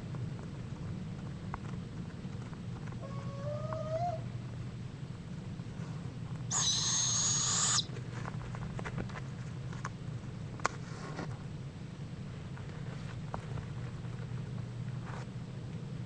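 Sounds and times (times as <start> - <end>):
steady low hum: 0.0 - 16.0
owl hissing screech: 6.5 - 7.9.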